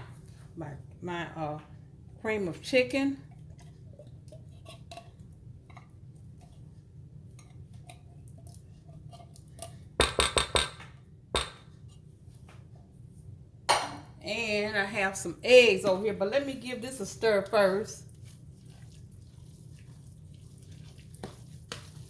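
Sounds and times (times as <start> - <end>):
can knocking against dish: 10.0 - 11.7.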